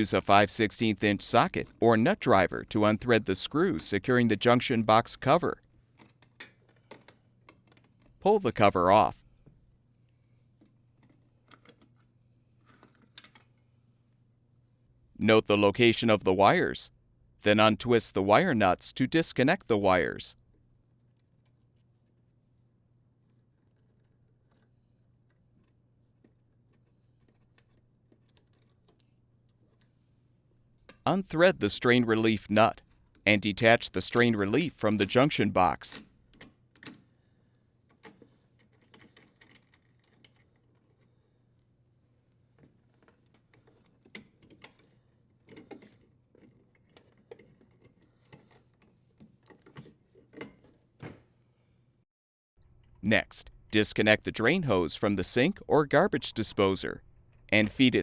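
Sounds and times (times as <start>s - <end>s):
small parts clicking and tapping: 10.6s - 13.6s, 23.3s - 29.9s, 37.8s - 41.2s, 42.6s - 51.1s.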